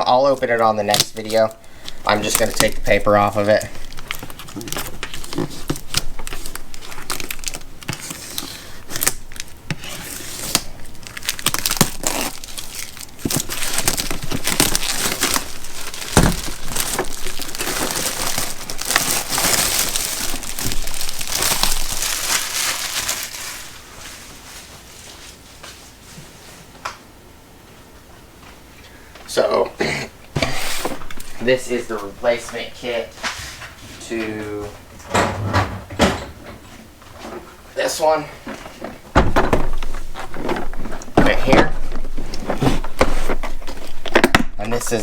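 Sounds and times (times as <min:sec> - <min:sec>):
paper tearing and crumpling: 0:02.1 - 0:23.9.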